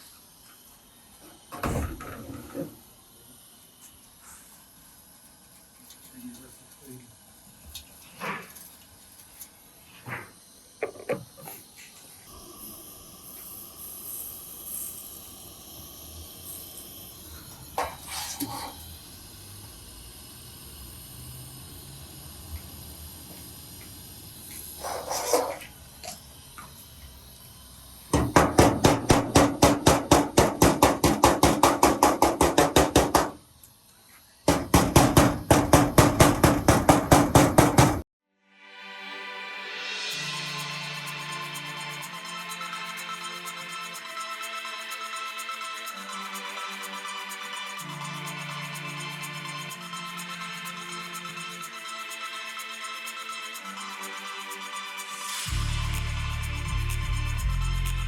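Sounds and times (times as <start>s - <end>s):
power tool hammering: 28.1s - 33.5s, 34.5s - 38.0s.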